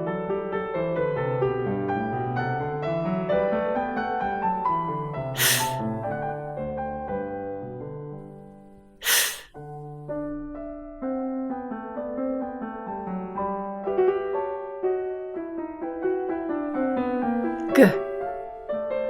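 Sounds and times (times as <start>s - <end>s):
gentle piano music: 0.0s - 8.8s, 9.6s - 19.0s
woman making breathy f sound: 5.4s - 5.8s, 9.0s - 9.5s, 17.8s - 18.0s.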